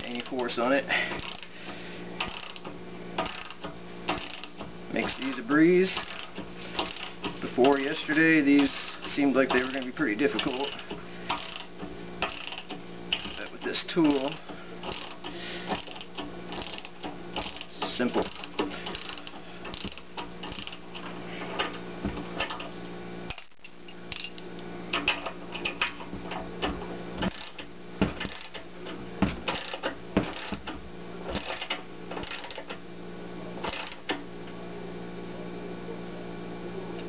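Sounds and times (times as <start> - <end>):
steady low hum: 0.0 - 37.0
ratchet wrench clicking: 1.2 - 1.5, 2.2 - 5.4, 6.0 - 8.0, 9.5 - 20.8, 27.2 - 28.6, 29.5 - 30.6, 31.4 - 32.8, 33.6 - 34.0.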